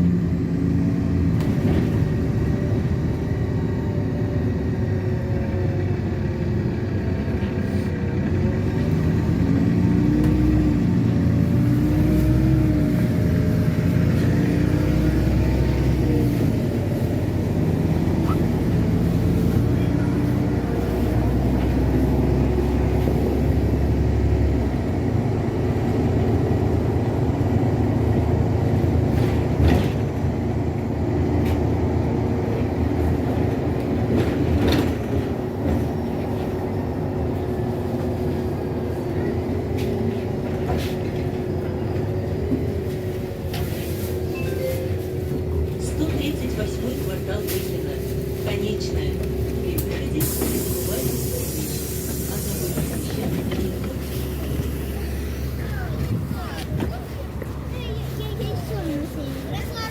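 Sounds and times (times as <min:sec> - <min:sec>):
bus engine running: 0:00.0 - 0:59.9
low road rumble: 0:00.0 - 0:59.9.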